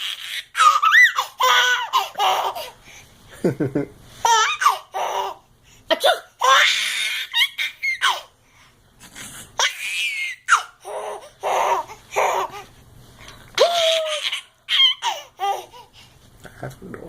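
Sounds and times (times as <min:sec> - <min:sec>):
baby laughing: 0:00.0 - 0:02.8, 0:04.2 - 0:08.3, 0:09.6 - 0:12.7, 0:13.6 - 0:15.9.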